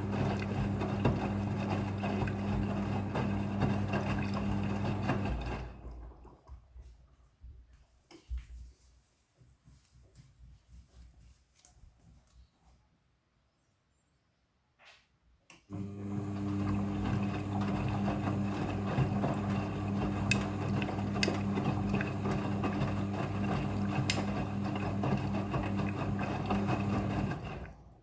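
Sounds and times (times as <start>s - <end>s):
washing machine motor hum: 0.0s - 6.6s, 15.7s - 28.0s.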